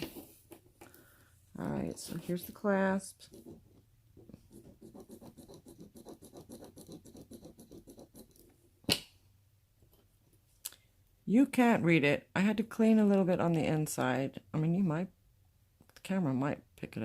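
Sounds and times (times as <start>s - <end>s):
fast scratching strokes on metal: 4.8s - 8.3s.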